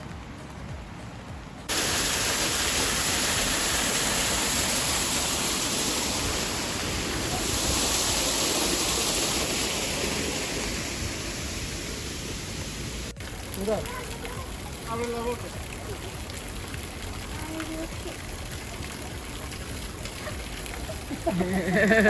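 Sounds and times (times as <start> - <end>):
rain: 0.0 - 22.0
waterfall rushing: 1.2 - 22.0.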